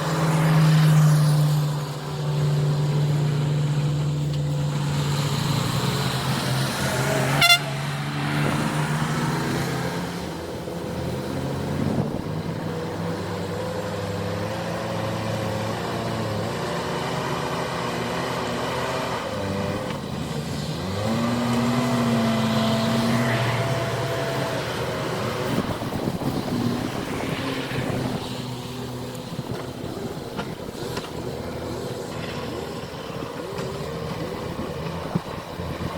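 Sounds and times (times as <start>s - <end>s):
backhoe engine under load: 0.0s - 35.9s.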